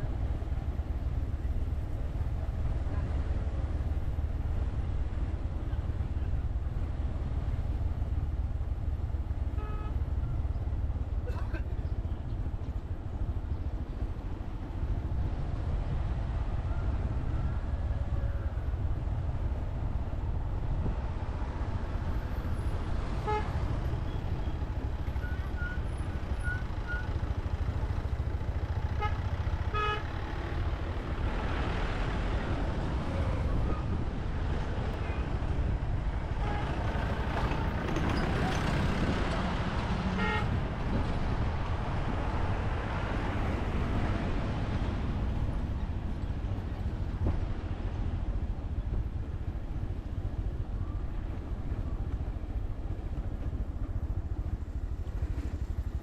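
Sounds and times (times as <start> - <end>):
vehicle horn toots: 9.5 - 10.0, 29.0 - 30.1, 40.1 - 40.6
motorcycle engine rumble: 44.3 - 56.0.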